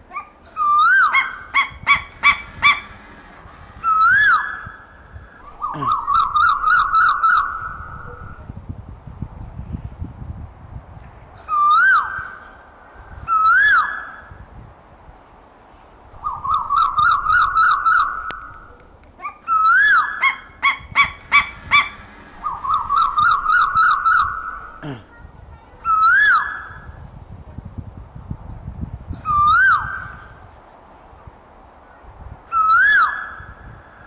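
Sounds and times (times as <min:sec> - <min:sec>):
bird calling: 0:00.1 - 0:08.4, 0:11.4 - 0:14.4, 0:16.1 - 0:27.0, 0:32.5 - 0:34.0.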